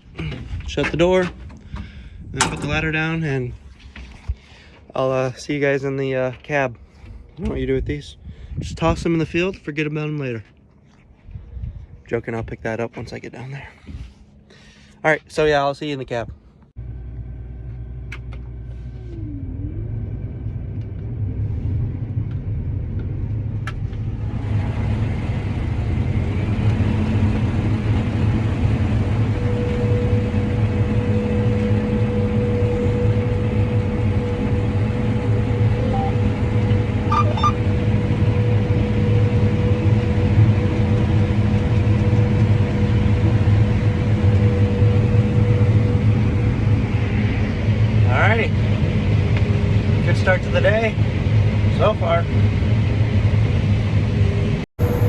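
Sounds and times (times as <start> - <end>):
combine harvester rumbling: 16.8 - 55.0
steady whine: 16.8 - 55.0.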